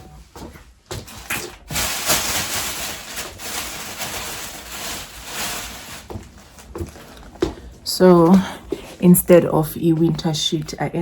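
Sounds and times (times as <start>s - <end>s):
packaging rustling and crinkling: 0.9s - 7.8s.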